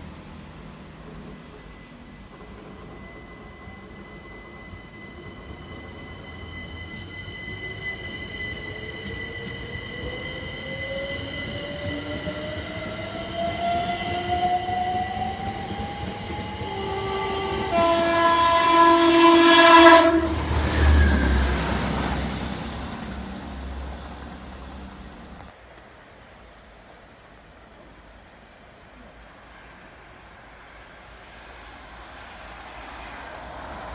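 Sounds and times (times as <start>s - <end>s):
train rushing past: 0.0s - 25.7s, 27.1s - 33.9s
train whine: 0.0s - 33.9s
train horn: 16.6s - 21.7s.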